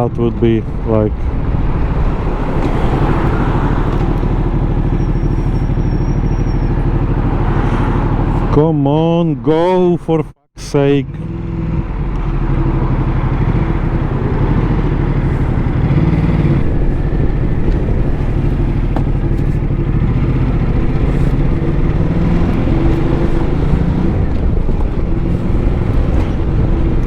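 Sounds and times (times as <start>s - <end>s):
wind noise: 0.0s - 6.7s, 13.4s - 27.0s
road noise: 0.0s - 27.0s
motorcycle engine running: 0.5s - 8.5s, 11.2s - 27.0s.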